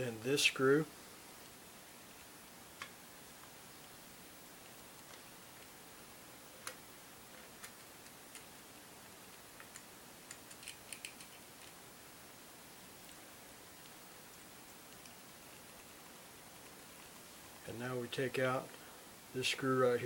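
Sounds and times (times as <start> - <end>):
low hiss: 0.0 - 20.0
small metallic clicks: 9.6 - 11.8.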